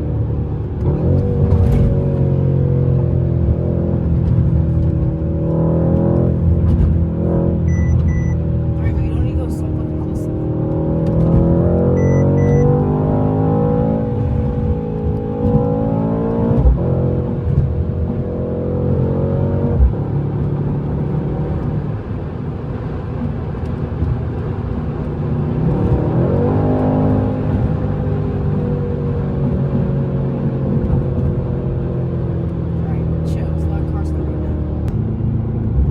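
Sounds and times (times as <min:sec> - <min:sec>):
car engine accelerating: 0:00.0 - 0:35.9
gear upshift thump: 0:00.8 - 0:02.4, 0:05.9 - 0:08.4, 0:10.7 - 0:12.7, 0:14.2 - 0:18.2.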